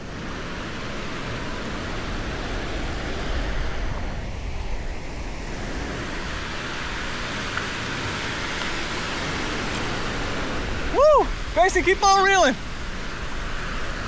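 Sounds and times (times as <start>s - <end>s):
surf washing onto beach: 0.0s - 14.0s
wind rumbling on microphone: 0.0s - 14.0s.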